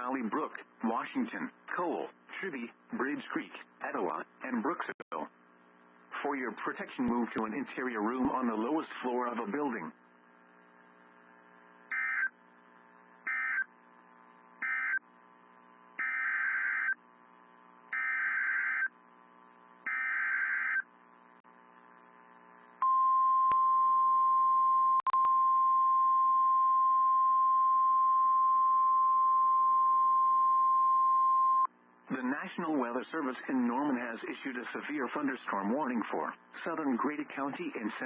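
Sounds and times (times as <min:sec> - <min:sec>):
steady alarm tone: 0:11.9 - 0:12.4, 0:13.2 - 0:13.7, 0:14.6 - 0:15.0, 0:16.0 - 0:17.0, 0:17.9 - 0:19.0, 0:19.8 - 0:20.9.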